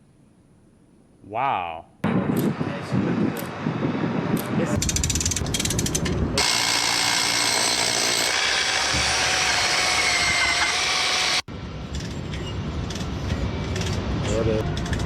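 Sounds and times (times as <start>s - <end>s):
power tool cutting stone: 6.4s - 11.5s.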